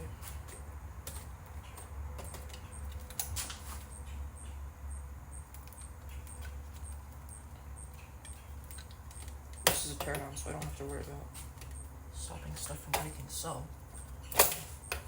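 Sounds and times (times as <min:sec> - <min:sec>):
low electrical hum: 0:00.0 - 0:15.0
small clicks and scratches: 0:05.5 - 0:11.8.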